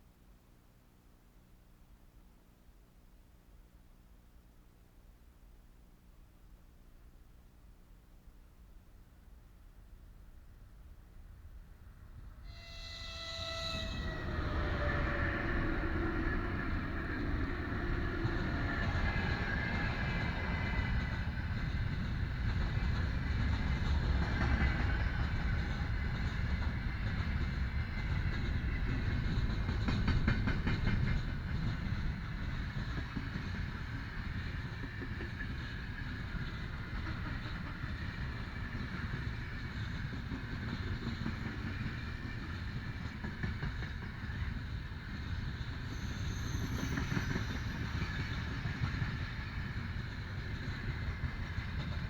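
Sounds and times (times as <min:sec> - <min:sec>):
freight train rumbling past: 0:11.4 - 0:52.0.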